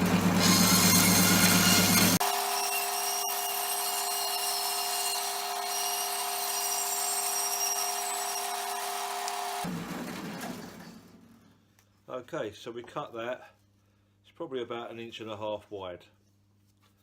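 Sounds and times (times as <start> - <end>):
two-tone whine: 0.0 - 9.6
power saw cutting plastic pipe: 0.0 - 10.6.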